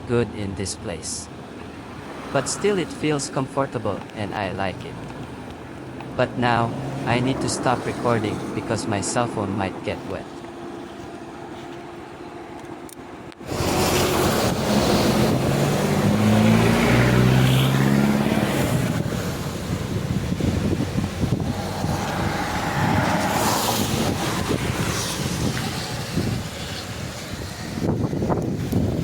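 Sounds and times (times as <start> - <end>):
road and wind noise: 0.0 - 29.0
loud engine drone: 6.0 - 28.8.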